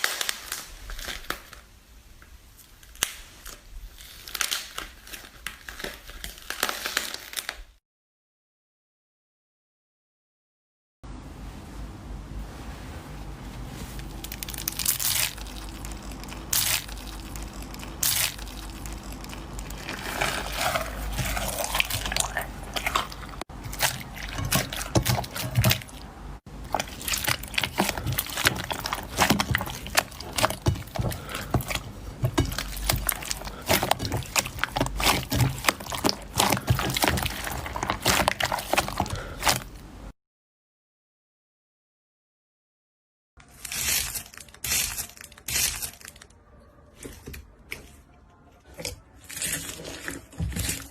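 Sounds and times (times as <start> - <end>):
slime squeezed wet sticky pops: 26.7 - 39.7.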